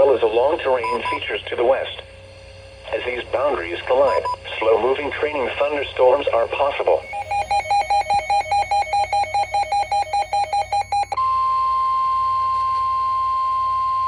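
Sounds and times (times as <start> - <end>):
rapid two-pitch electronic beeping: 0.9 - 1.2, 4.1 - 4.4, 7.0 - 11.2
steady warning alarm tone: 0.9 - 1.2, 4.1 - 4.4, 7.0 - 11.2.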